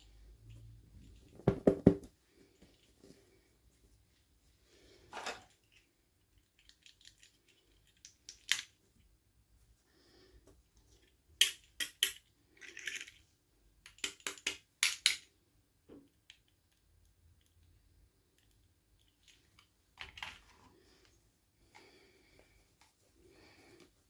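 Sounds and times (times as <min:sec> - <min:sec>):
toy pieces clicking and tapping: 0:06.3 - 0:08.8, 0:11.4 - 0:13.2, 0:13.8 - 0:15.3.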